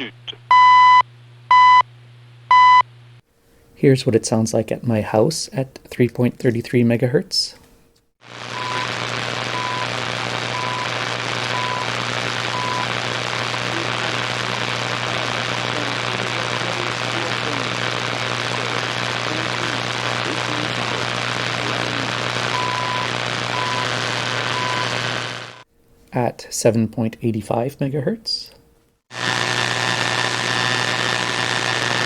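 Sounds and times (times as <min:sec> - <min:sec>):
radio static hiss: 0:00.0 - 0:00.5, 0:08.2 - 0:25.6, 0:29.1 - 0:32.0
low hum: 0:08.3 - 0:25.6.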